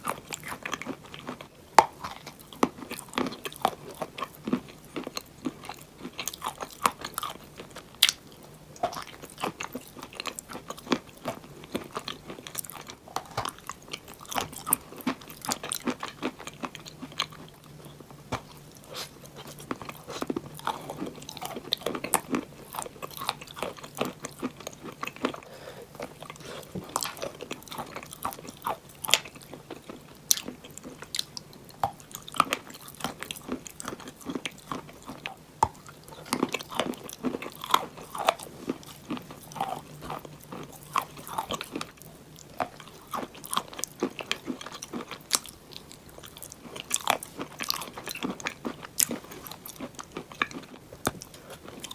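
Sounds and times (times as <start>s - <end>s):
chalk crunching in mouth: 18.3s - 30.6s.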